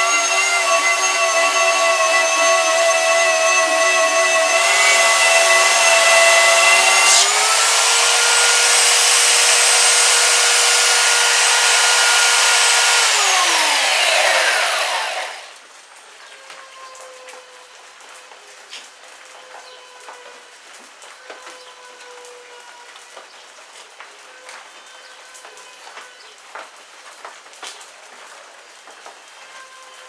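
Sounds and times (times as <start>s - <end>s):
power tool whining: 0.0s - 15.6s.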